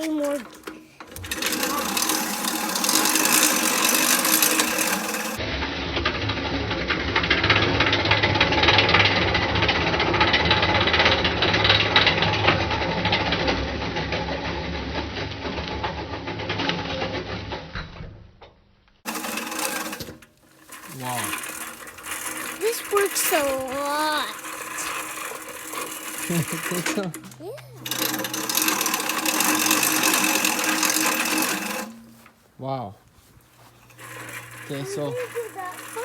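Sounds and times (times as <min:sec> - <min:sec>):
push reel mower blades clattering: 0:00.0 - 0:05.4, 0:19.1 - 0:32.5, 0:33.5 - 0:36.0.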